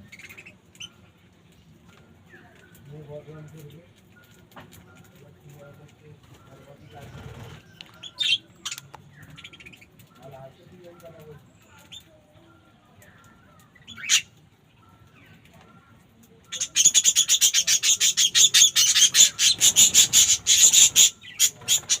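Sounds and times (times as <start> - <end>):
bird calling harsh notes: 16.5 - 22.0.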